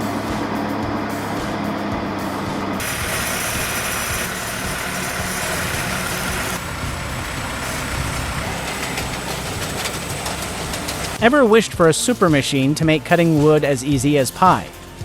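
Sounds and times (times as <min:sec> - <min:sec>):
heavy machine engine running: 0:02.4 - 0:11.2
mechanical noise: 0:02.8 - 0:11.2.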